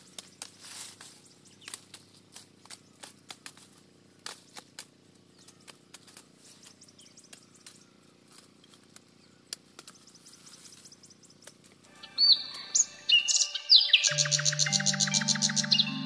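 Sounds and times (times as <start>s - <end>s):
low steady hum: 11.8s - 16.0s
high chirps: 12.0s - 16.0s.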